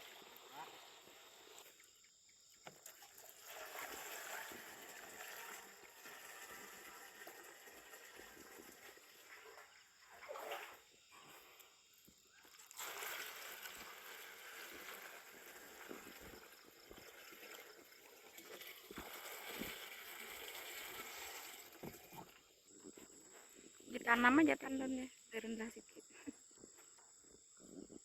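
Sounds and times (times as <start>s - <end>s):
water splashing onto plants and soil: 12.5s - 22.2s.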